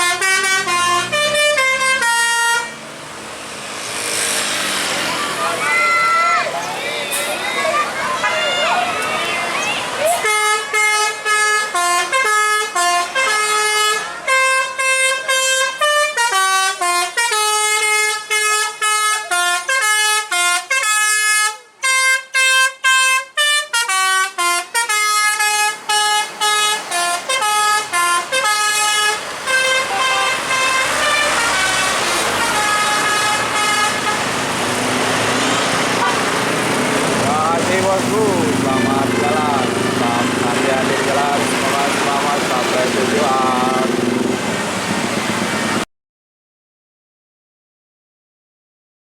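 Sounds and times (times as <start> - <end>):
musical bus air horn: 0.0 - 2.8, 10.1 - 36.5, 38.4 - 42.0.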